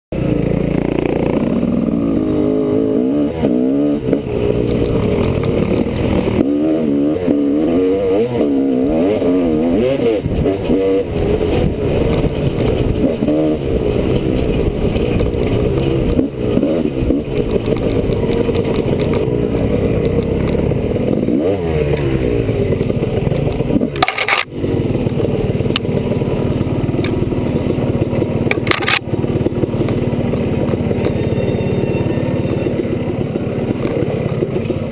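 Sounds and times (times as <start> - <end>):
two-stroke motorcycle engine revving: 0.2 - 34.9.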